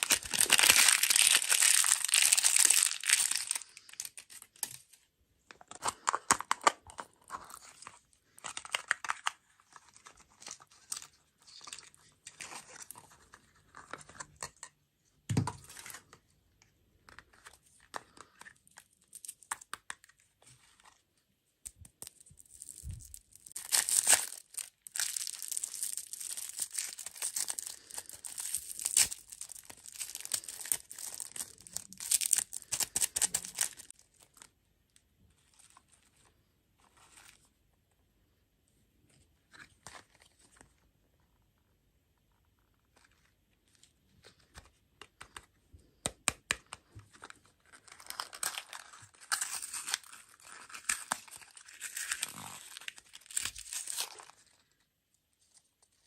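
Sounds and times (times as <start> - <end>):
plastic packaging tearing and crinkling: 0.0 - 4.9, 22.0 - 34.5, 47.2 - 54.6.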